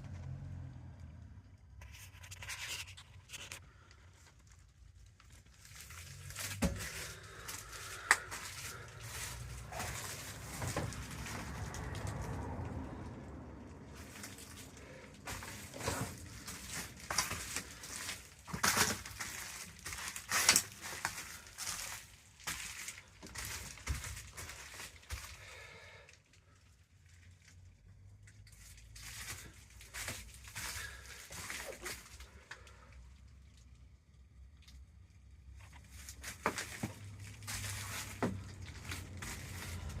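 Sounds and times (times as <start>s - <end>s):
rustling: 1.8s - 12.4s, 13.9s - 25.5s, 35.5s - 40.0s.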